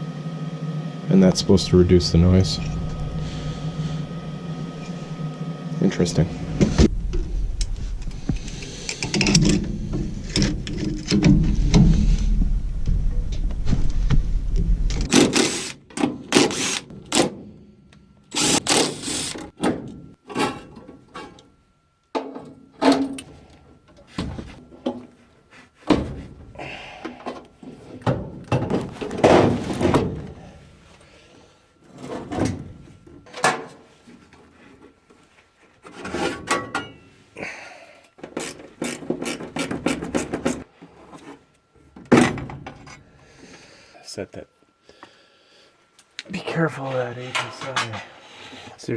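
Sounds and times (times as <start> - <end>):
low rumble: 1.2 - 15.2
metal clanks and scrapes: 35.8 - 37.1, 47.2 - 48.2.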